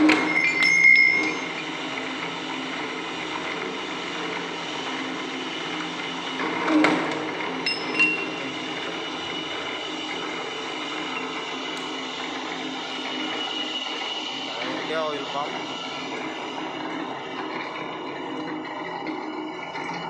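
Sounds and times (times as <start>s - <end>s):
hydraulic rebar cutter humming: 0.0s - 20.0s.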